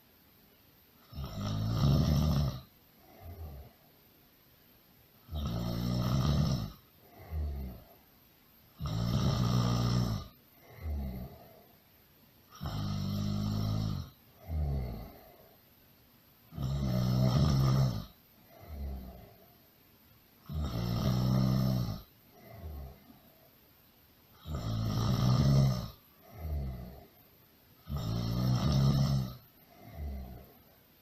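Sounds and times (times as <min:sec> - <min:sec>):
loud snoring: 0:01.0 - 0:03.8, 0:05.2 - 0:08.0, 0:08.8 - 0:11.6, 0:12.5 - 0:15.5, 0:16.5 - 0:19.4, 0:20.4 - 0:23.1, 0:24.3 - 0:27.2, 0:27.8 - 0:30.7.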